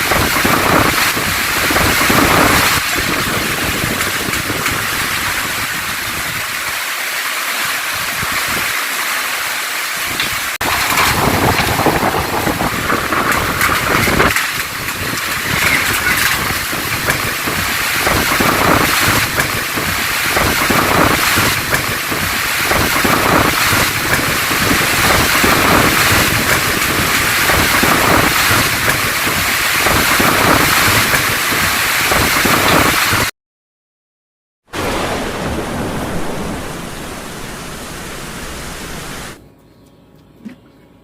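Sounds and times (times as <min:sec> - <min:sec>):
wind buffeting microphone: 0:00.0 - 0:06.7, 0:10.1 - 0:33.3
heavy rain pouring: 0:00.0 - 0:33.3, 0:34.7 - 0:39.4.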